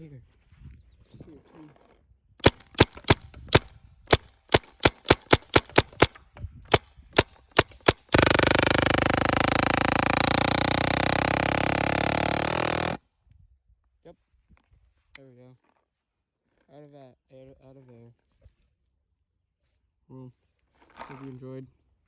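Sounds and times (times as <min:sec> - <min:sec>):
paintball gun pulsing burp: 0:02.4 - 0:13.0
paintball gun shots: 0:02.4 - 0:13.0.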